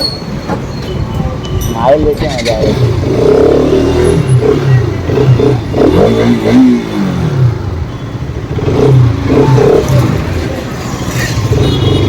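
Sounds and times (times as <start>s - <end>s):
motorcycle engine revving: 2.4s - 12.0s.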